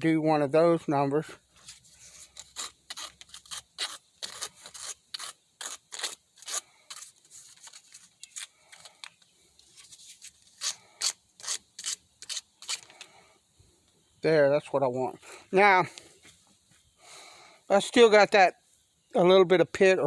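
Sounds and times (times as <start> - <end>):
file scraping copper tip: 2.1 - 7.1, 10.6 - 13.0.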